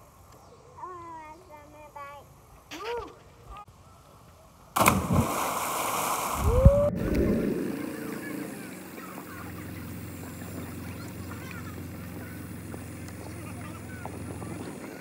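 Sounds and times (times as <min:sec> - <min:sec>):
loud splash into water: 0:04.8 - 0:08.5
water churning: 0:04.8 - 0:15.0
boat motor running: 0:06.5 - 0:15.0.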